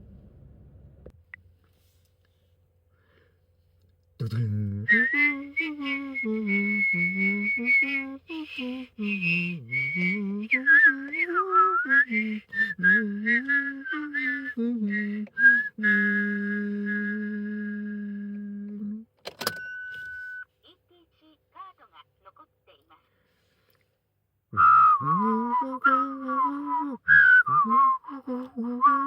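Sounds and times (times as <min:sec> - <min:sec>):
person whistling a melody: 0:04.8 - 0:19.0, 0:24.6 - 0:29.0.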